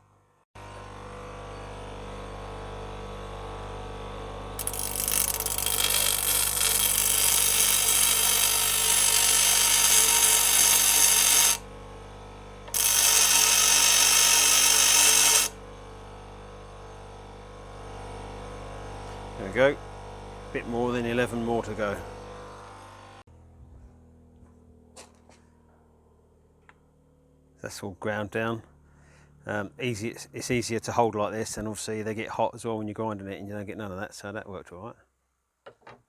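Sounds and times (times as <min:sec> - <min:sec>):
electric grinder motor running: 0:00.6 - 0:23.2
grinding wheel on steel screws: 0:04.6 - 0:11.6, 0:12.7 - 0:15.6.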